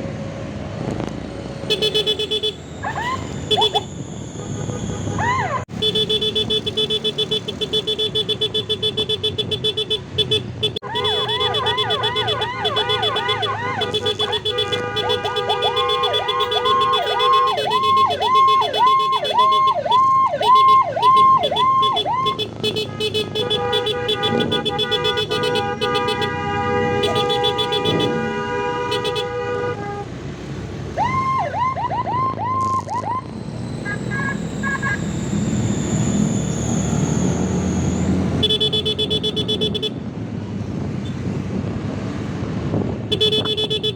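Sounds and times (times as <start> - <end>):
road traffic: 0.0 - 43.9
emergency vehicle siren: 2.4 - 5.8, 10.8 - 22.7, 30.6 - 38.5.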